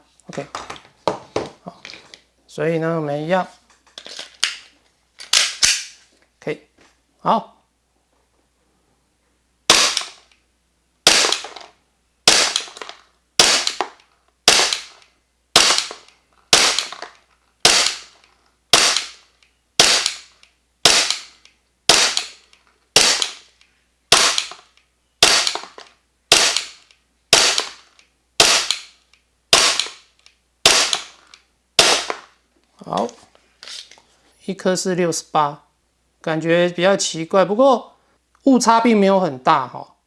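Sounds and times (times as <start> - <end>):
airsoft pistol shots: 9.7 - 10.3, 11.0 - 11.7, 12.3 - 15.0, 15.6 - 19.2, 19.8 - 22.4, 23.0 - 23.5, 24.1 - 30.0, 30.6 - 31.2, 31.8 - 32.3.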